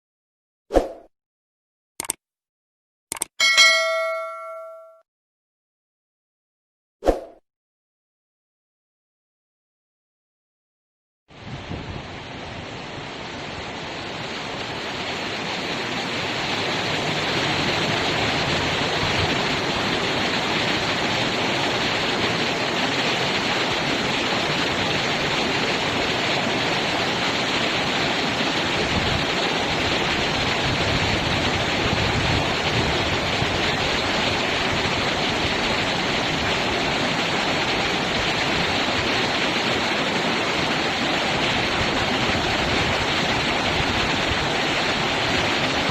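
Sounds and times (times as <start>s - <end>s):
river water rushing: 12.2s - 45.9s.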